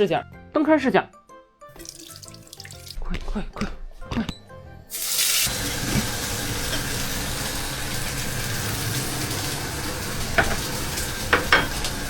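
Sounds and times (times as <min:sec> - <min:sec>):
food sizzling in a pan: 0:01.8 - 0:03.0, 0:04.9 - 0:12.0
utensil clacking against pan: 0:10.4 - 0:12.0.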